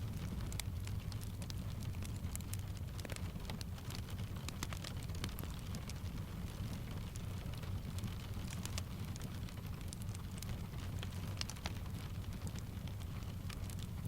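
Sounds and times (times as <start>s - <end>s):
fireplace crackling and popping: 0.0s - 14.0s
rain falling on a window: 0.0s - 14.0s.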